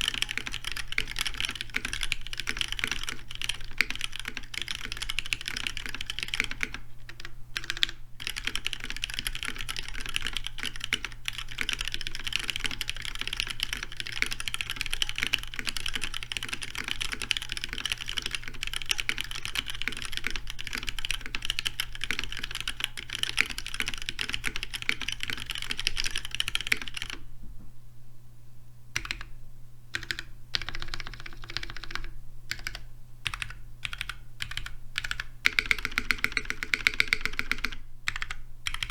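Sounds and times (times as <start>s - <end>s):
fast mechanical keyboard typing: 0.0s - 27.2s, 29.0s - 29.3s, 29.9s - 38.9s.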